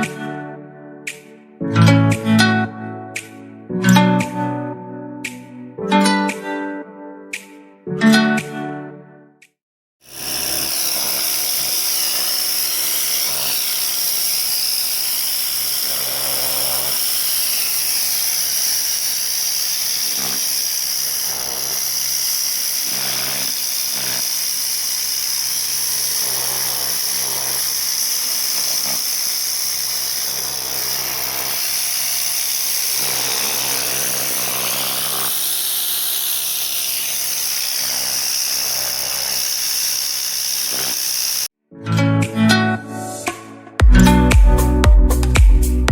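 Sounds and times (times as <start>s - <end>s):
pressure washer jet hissing: 10.2s - 41.5s.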